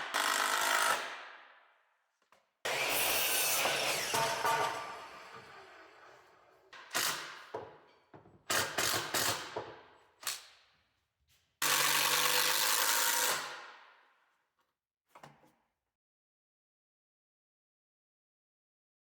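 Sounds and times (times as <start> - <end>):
power tool running: 2.7 - 6.1, 11.6 - 13.3.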